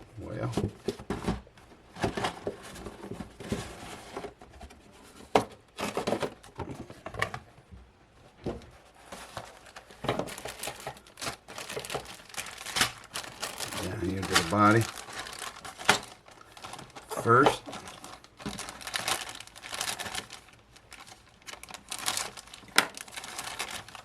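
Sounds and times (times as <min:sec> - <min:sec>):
plastic bags crinkling: 0:09.0 - 0:24.0.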